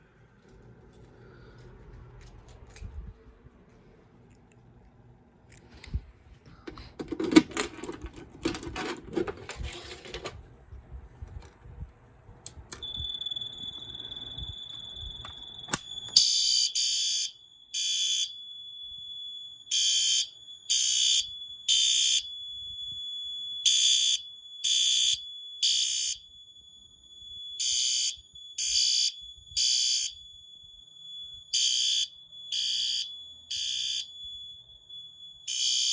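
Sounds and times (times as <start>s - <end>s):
clattering and rustling: 6.6s - 10.4s.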